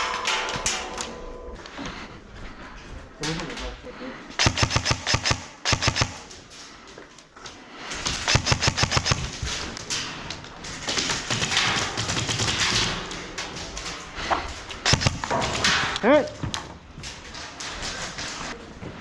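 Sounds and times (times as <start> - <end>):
airsoft gun automatic burst: 4.4 - 6.3, 8.0 - 9.8, 10.9 - 13.0, 14.8 - 16.0.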